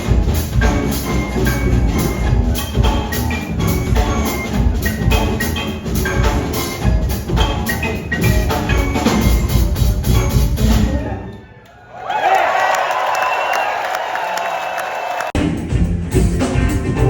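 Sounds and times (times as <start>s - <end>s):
steady drum beat: 0.0s - 11.1s
heavy bass: 0.0s - 11.2s, 15.4s - 17.0s
rock band playing: 0.0s - 11.3s, 15.4s - 17.0s.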